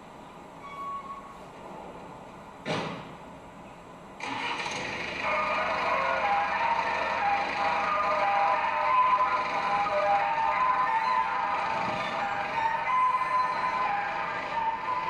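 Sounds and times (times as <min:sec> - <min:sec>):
held instrumental tones: 0:05.2 - 0:15.0.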